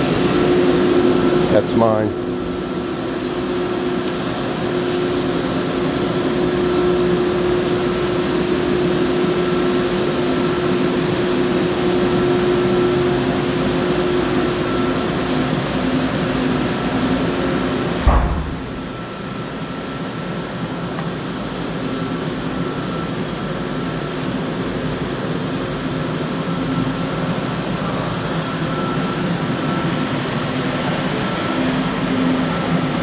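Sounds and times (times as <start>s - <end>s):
mechanical hum with held tones: 0.0s - 33.0s
short low bump: 18.0s - 19.1s.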